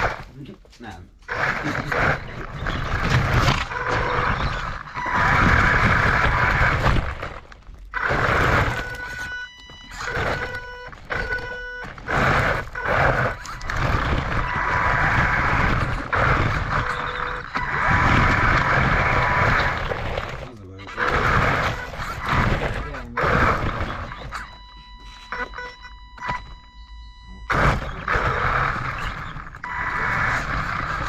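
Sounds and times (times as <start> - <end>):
radio-controlled car throttle bursts: 0.0 - 0.4, 1.2 - 31.0
steady whine: 0.0 - 31.0.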